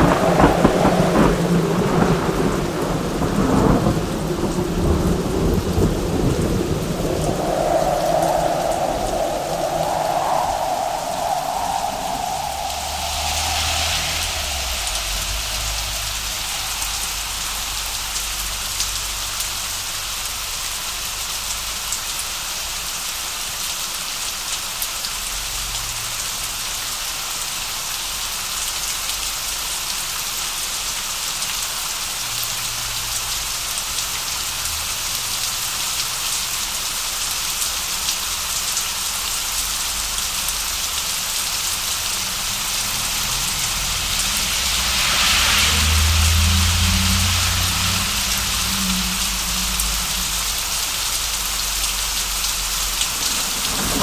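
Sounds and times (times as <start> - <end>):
low rumble: 0.0 - 20.4, 41.4 - 54.0
heavy rain hiss: 0.0 - 54.0.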